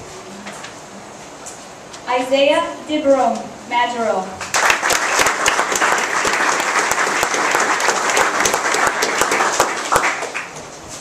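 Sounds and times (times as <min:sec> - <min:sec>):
audience applauding: 0:04.4 - 0:10.6.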